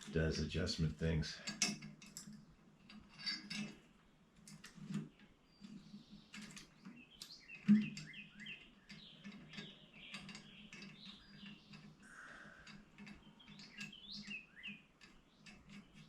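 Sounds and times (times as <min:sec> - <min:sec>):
small birds chirping: 0:00.2 - 0:16.0.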